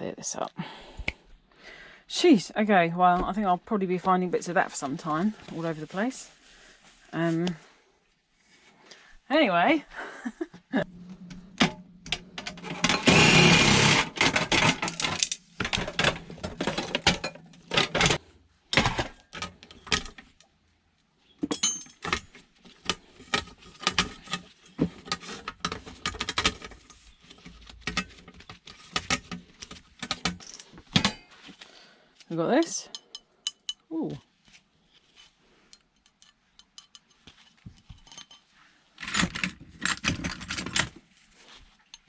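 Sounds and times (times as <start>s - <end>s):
tools and metal parts clattering: 10.9s - 20.3s, 21.4s - 31.4s, 35.8s - 41.1s
loud noisy rattle: 12.6s - 15.3s.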